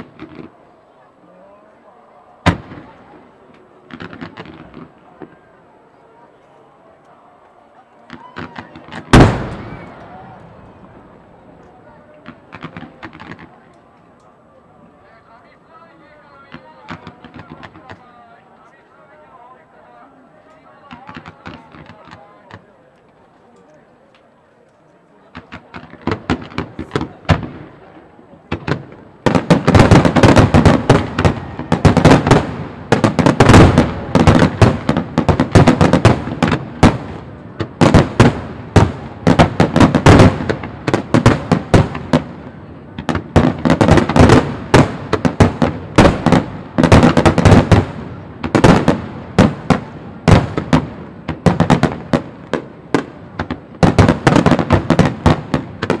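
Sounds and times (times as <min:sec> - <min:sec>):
fireworks bursts and bangs: 0:00.0 - 0:00.6, 0:02.4 - 0:05.4, 0:08.0 - 0:13.7, 0:16.4 - 0:18.2, 0:20.8 - 0:22.8, 0:25.2 - 0:56.0.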